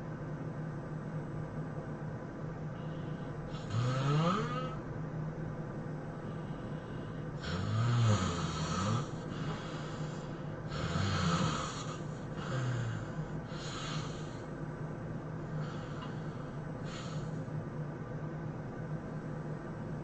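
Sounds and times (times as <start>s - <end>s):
person snoring heavily: 2.9s - 4.8s, 6.3s - 14.5s, 15.5s - 17.4s.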